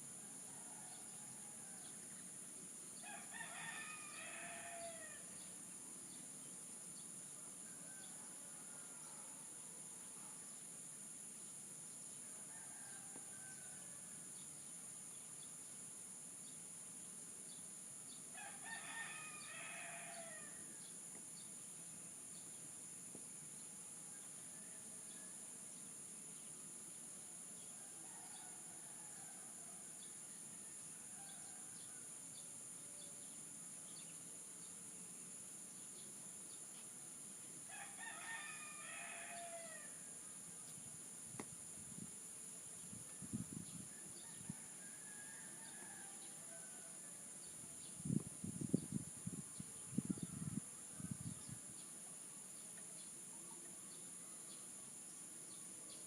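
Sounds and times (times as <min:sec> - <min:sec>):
high insect drone: 0:00.0 - 0:56.0
rooster crowing: 0:03.0 - 0:05.3, 0:12.3 - 0:14.1, 0:18.3 - 0:20.7, 0:37.7 - 0:40.0, 0:43.9 - 0:47.2.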